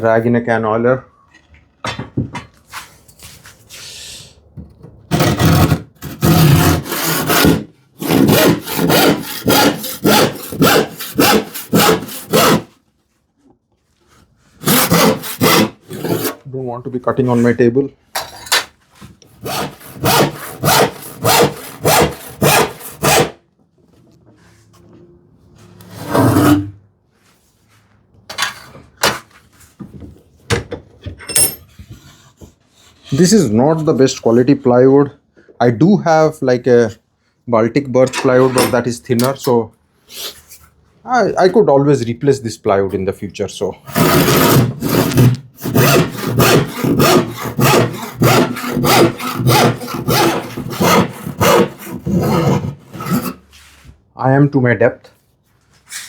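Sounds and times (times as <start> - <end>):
knocks on workbench: 1.8 - 2.5
hand saw cutting plywood: 5.1 - 12.8, 14.6 - 16.5, 19.3 - 23.4, 25.8 - 26.8, 43.8 - 53.6
wood scraping slide: 25.6 - 26.7.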